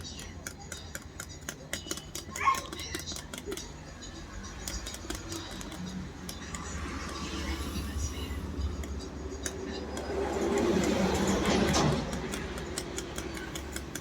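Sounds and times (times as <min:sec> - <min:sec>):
indistinct background voices: 0:02.7 - 0:14.0
steady low hum: 0:03.8 - 0:14.0.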